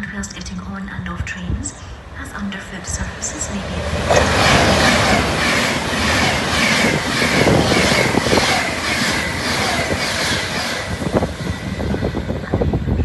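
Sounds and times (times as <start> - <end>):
train wheels beating on rails: 2.8 - 13.0.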